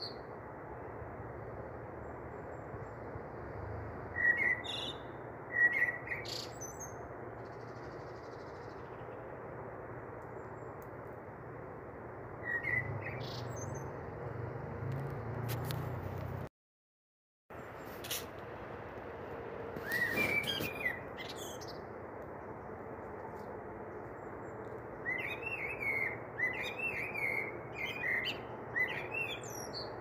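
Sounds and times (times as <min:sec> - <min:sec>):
high bird-like chirps: 0:12.4 - 0:13.9, 0:19.8 - 0:21.8.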